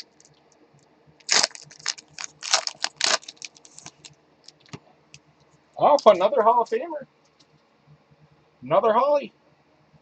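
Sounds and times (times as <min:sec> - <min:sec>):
card wrapper crinkling: 0:00.0 - 0:00.3, 0:01.2 - 0:04.8.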